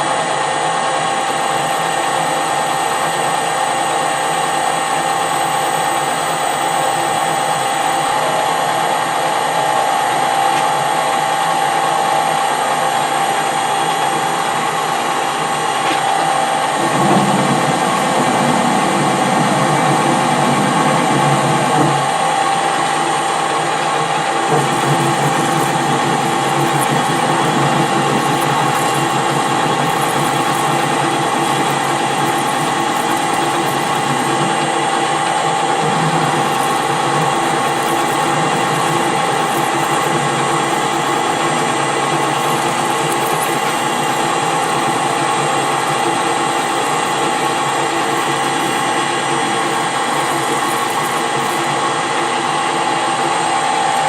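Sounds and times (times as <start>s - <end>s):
metal lathe whining: 0.0s - 54.0s
rough cutting noise: 24.5s - 34.6s, 35.8s - 52.0s.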